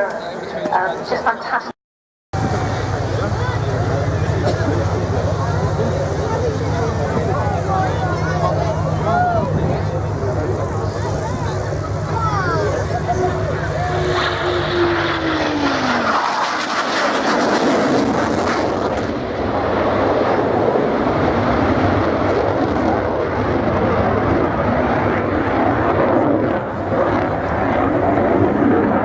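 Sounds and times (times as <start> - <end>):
aircraft flying past: 2.4 - 29.0.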